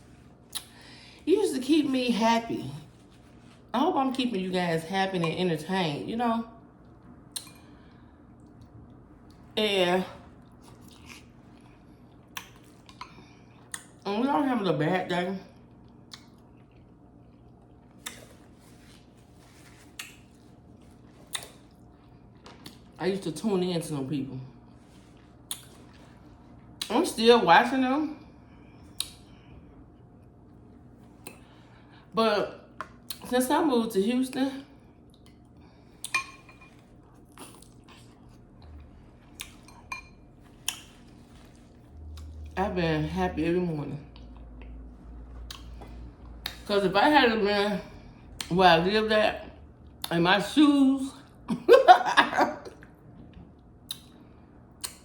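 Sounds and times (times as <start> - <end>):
soft rustling: 2.7 - 3.8, 18.2 - 21.3, 40.4 - 41.9
soft chewing: 2.8 - 3.8, 6.6 - 9.6, 10.2 - 14.0, 15.4 - 23.0, 24.5 - 26.9, 28.4 - 32.1, 34.8 - 42.6, 44.1 - 46.7.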